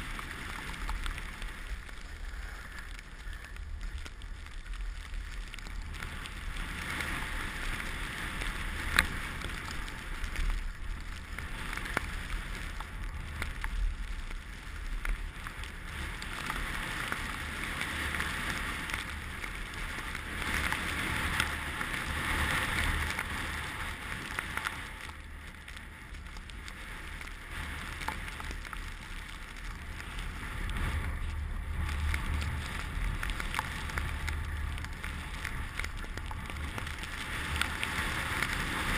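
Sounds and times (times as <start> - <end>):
skis sliding over snow: 0.0 - 38.9
wind rumbling on microphone: 0.0 - 38.9.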